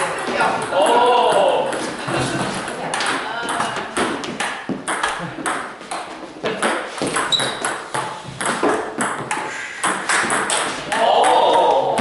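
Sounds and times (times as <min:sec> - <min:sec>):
table tennis balls clicking: 0:00.0 - 0:12.0.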